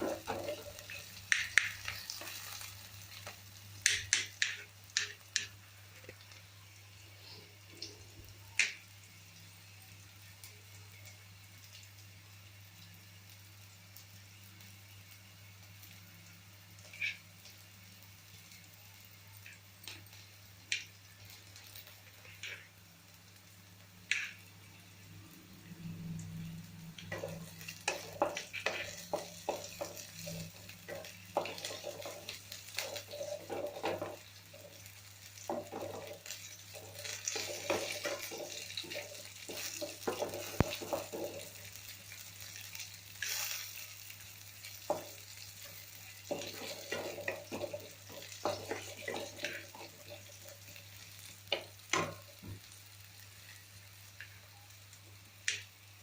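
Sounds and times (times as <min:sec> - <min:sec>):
food sizzling in oil: 0:00.0 - 0:56.0
spatula scraping in a pan: 0:27.0 - 0:41.6, 0:42.6 - 0:50.8.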